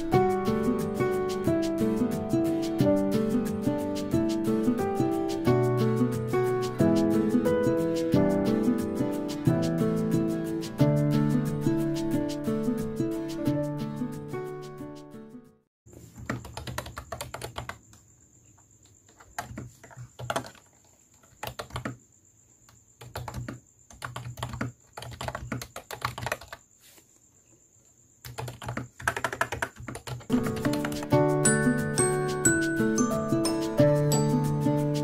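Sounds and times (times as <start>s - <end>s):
computer keyboard typing: 16.2s - 17.8s, 19.1s - 22.0s, 23.0s - 26.6s, 28.2s - 32.9s.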